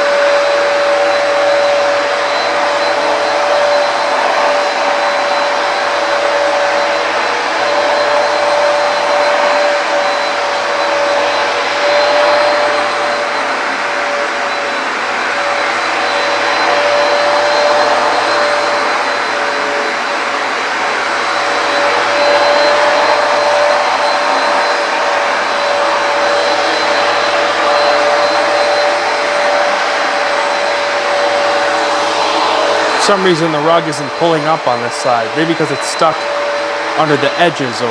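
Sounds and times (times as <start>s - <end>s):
carpet cleaner running: 0.0s - 37.9s.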